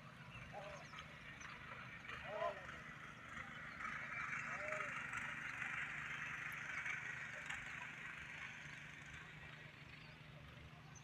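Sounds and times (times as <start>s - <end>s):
low engine-like hum: 0.0s - 11.0s.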